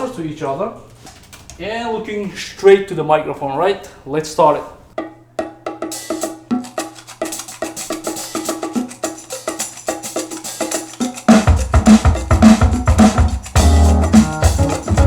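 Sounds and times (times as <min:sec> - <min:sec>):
percussive music through speakers: 0:05.0 - 0:15.0.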